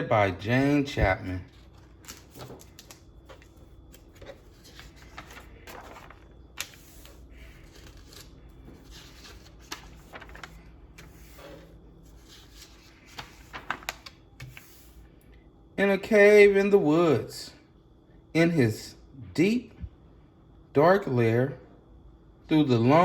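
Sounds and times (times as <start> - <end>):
faint low hum: 0.0 - 23.0
book pages rustling: 0.9 - 15.0.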